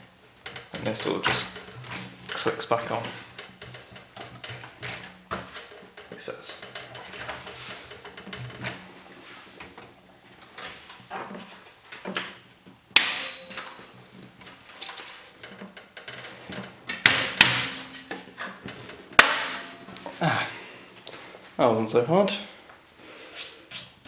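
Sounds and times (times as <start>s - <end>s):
computer case parts clicking: 13.0s - 20.2s.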